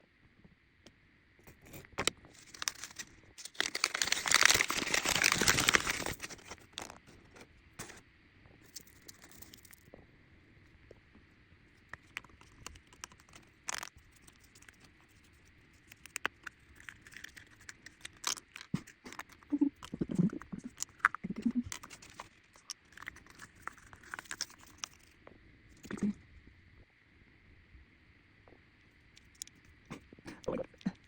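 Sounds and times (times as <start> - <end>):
packaging clicks and taps: 1.7 - 7.0
packaging rustling: 2.0 - 8.0.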